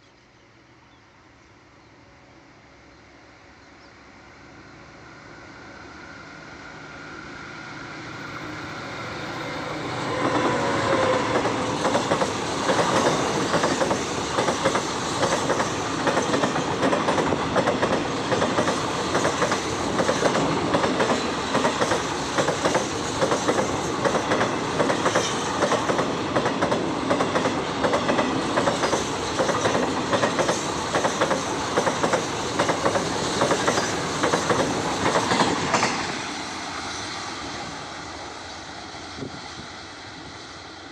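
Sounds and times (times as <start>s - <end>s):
diesel locomotive engine hum: 0.1s - 40.9s
train wheels clattering over rail joints: 10.2s - 37.0s.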